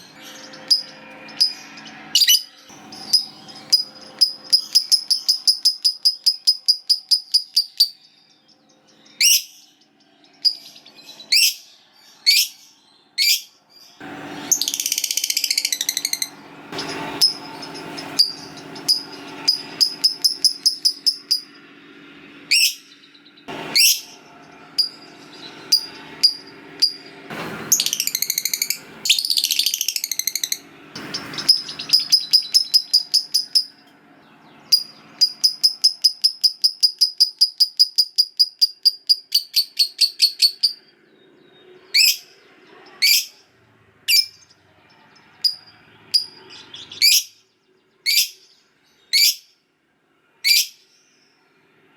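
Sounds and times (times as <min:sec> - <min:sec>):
lovebird rattling chatter: 0:02.2 - 0:08.0, 0:14.6 - 0:21.5, 0:27.7 - 0:33.8, 0:34.7 - 0:40.8.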